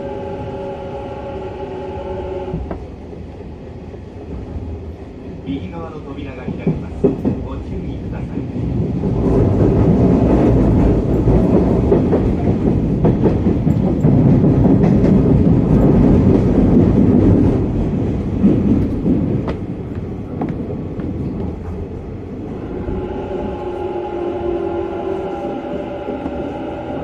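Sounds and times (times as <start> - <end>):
train motor whine: 0.0 - 2.8, 22.5 - 27.0
train wheels rumbling on rail: 0.0 - 27.0.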